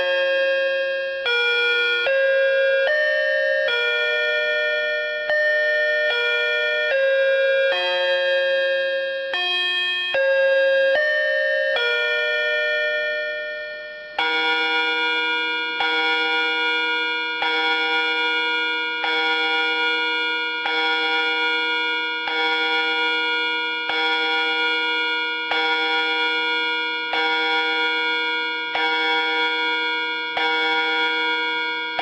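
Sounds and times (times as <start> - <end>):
electronic bell-like chime melody: 0.0 - 23.2.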